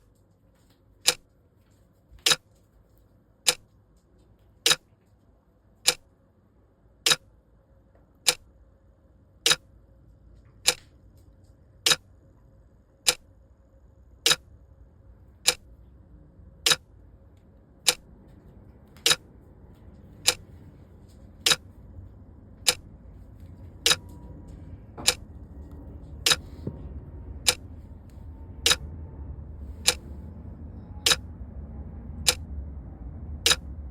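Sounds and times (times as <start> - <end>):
faint low rumble: 0.0 - 33.9
clock ticking: 1.0 - 1.3, 2.2 - 2.4, 3.5 - 3.7, 4.6 - 4.9, 5.8 - 6.1, 8.3 - 8.5, 9.5 - 9.7, 10.6 - 10.8, 11.8 - 12.1, 13.0 - 13.3, 14.2 - 14.5, 15.4 - 15.7, 16.6 - 16.9, 17.8 - 18.1, 19.0 - 19.2, 20.2 - 20.5, 21.4 - 21.7, 22.6 - 22.9, 23.8 - 24.4, 25.0 - 25.2, 26.2 - 26.5, 27.4 - 27.7, 28.6 - 28.8, 31.0 - 31.2, 32.2 - 32.4, 33.4 - 33.6.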